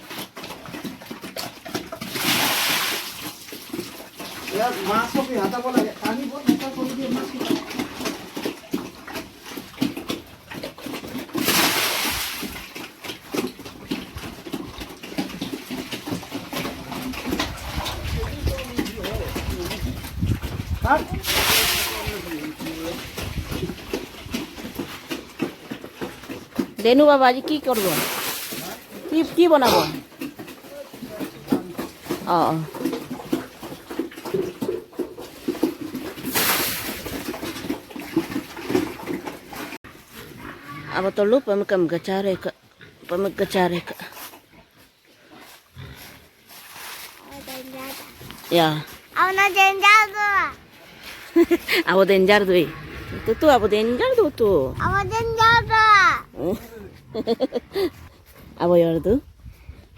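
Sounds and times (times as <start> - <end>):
pigs grunting and feeding: 0.0 - 59.9
loud splash of water: 2.1 - 3.5, 11.4 - 12.6, 21.1 - 22.3, 27.8 - 28.8, 36.2 - 37.4.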